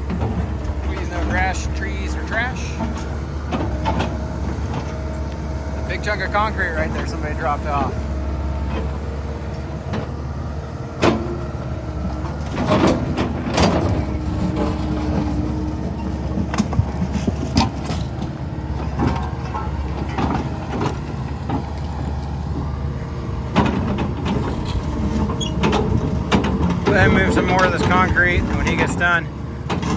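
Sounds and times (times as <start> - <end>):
diesel engine running: 0.0 - 29.9.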